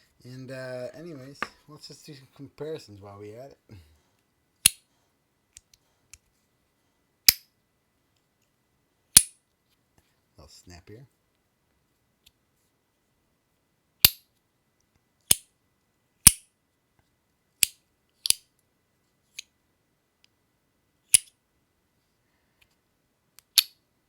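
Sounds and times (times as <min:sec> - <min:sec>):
fidget toy snapping: 0:23.4 - 0:23.8.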